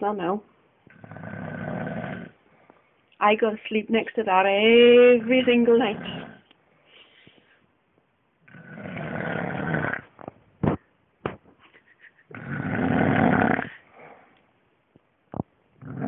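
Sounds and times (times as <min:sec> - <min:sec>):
man snoring: 0:00.9 - 0:02.4, 0:08.5 - 0:10.0, 0:12.3 - 0:13.8.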